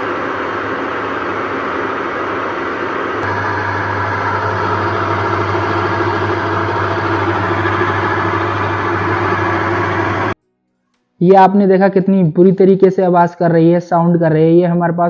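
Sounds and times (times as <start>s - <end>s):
steady low hum: 3.2s - 10.4s
washing machine harsh mechanical noise: 3.2s - 10.4s.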